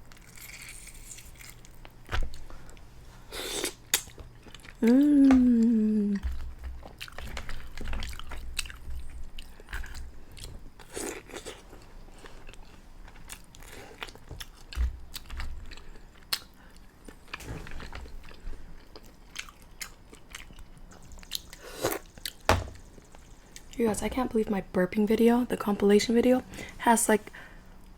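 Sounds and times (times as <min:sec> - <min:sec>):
wet chewing and lip-smacking: 0:03.5 - 0:23.7
low vocal sound: 0:04.8 - 0:06.2.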